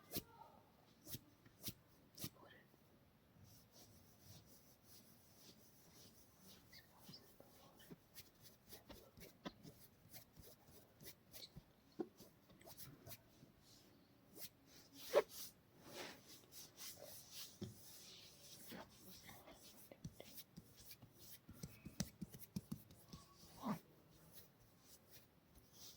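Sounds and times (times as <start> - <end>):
hands rubbing oiled skin: 14.4 - 25.9.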